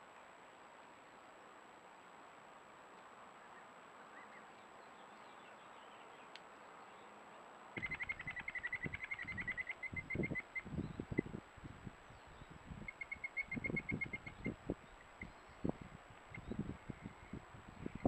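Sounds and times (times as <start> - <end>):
faint outdoor background: 0.0 - 18.0
bird rapid chattering call: 7.8 - 11.3, 12.9 - 14.6.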